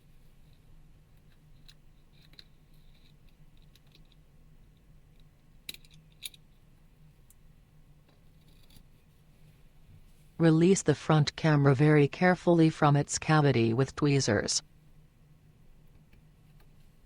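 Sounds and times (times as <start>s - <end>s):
low steady hum: 0.0s - 17.0s
small tools clicking and scratching: 1.2s - 4.2s, 8.2s - 8.9s.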